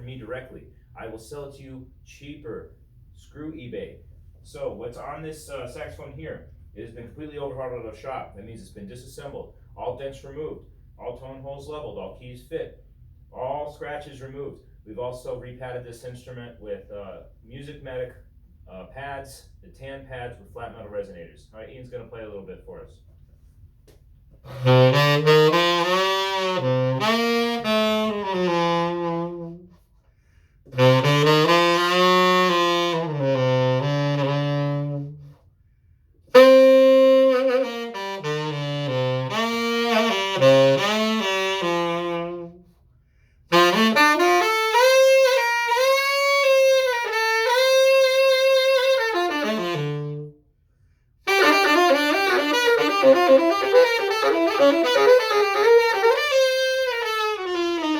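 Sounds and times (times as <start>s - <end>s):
solo tenor saxophone: 24.4s - 30.0s, 30.6s - 35.5s, 36.3s - 42.9s, 43.5s - 50.5s, 51.2s - 57.9s
saxophonist breathing: 29.9s - 30.8s, 42.9s - 43.5s.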